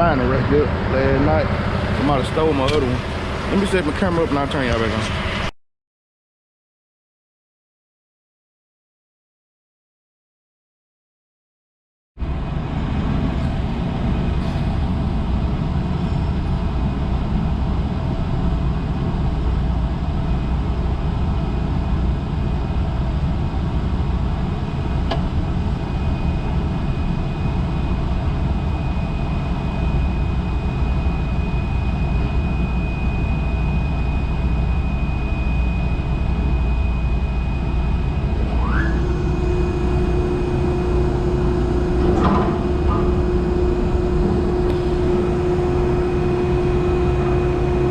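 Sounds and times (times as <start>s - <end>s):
diesel engine rumbling: 0.0s - 5.5s, 12.2s - 47.9s
rising pitch then steady hum: 22.7s - 47.9s
thin high whine: 25.5s - 47.9s.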